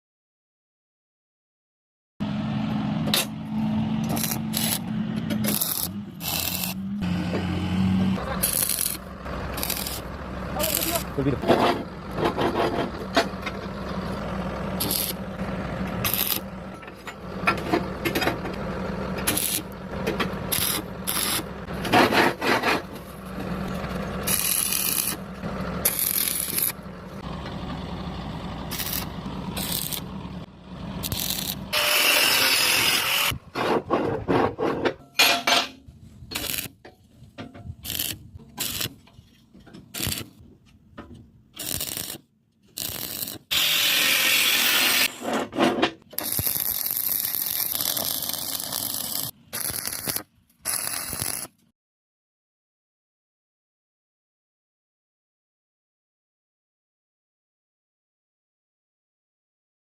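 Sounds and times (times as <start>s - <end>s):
hand tools scraping iron: 4.0s - 7.0s, 8.2s - 13.5s, 14.8s - 15.2s, 16.0s - 18.5s, 19.2s - 25.2s, 25.8s - 26.8s, 28.7s - 30.1s, 31.0s - 40.4s, 41.1s - 51.5s.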